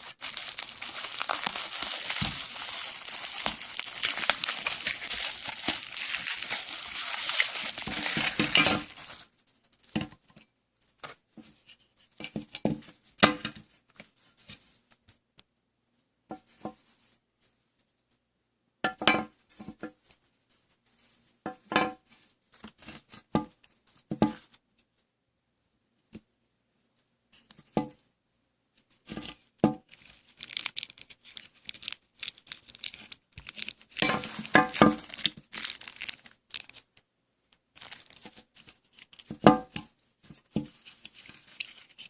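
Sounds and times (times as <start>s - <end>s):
packaging crinkling: 0.0s - 9.3s, 29.9s - 37.0s, 37.7s - 39.4s, 40.8s - 42.0s.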